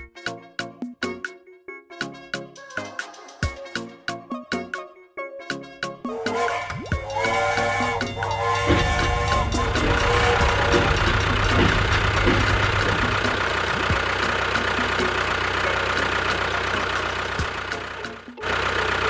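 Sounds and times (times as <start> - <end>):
small motor running: 6.2 - 19.0
regular ticking: 6.5 - 18.6.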